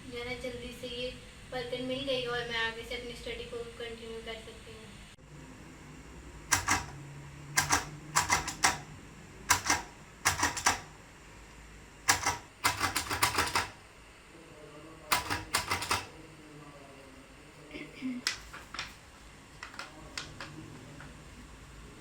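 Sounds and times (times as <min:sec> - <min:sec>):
braille typewriter key strikes: 0:06.5 - 0:07.0, 0:07.6 - 0:08.8, 0:09.5 - 0:10.9, 0:12.1 - 0:13.8, 0:15.1 - 0:16.1.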